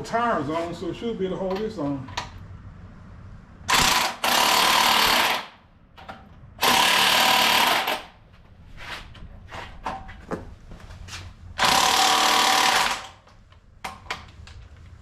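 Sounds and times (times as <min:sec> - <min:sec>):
impact wrench hammering: 0:03.7 - 0:08.1.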